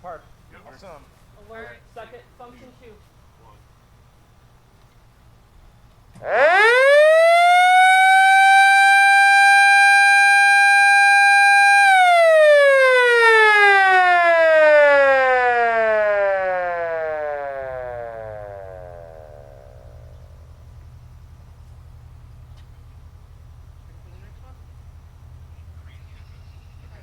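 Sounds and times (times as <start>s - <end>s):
siren winding down: 6.2s - 20.1s.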